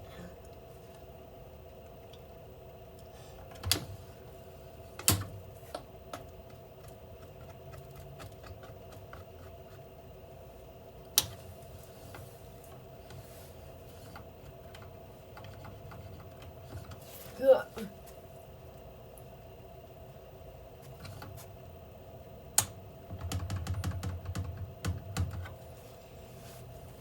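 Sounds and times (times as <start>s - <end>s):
washing machine hum: 0.0s - 27.0s
washing machine clicks and knocks: 3.5s - 4.0s, 5.0s - 6.3s, 22.6s - 25.6s.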